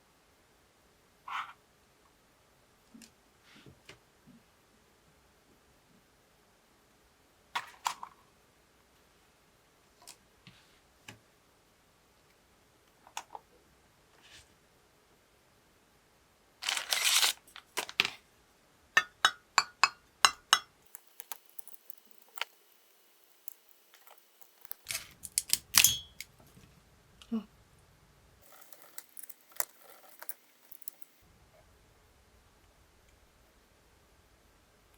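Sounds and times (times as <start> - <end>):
rustling scrape: 16.6 - 17.9.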